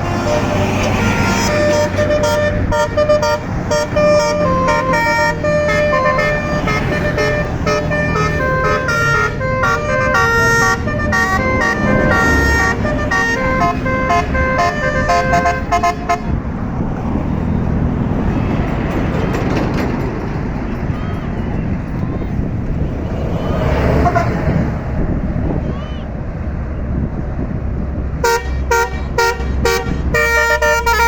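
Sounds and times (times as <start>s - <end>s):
musical air horn melody: 0.0s - 16.4s, 28.2s - 31.0s
bus engine running: 0.0s - 31.0s.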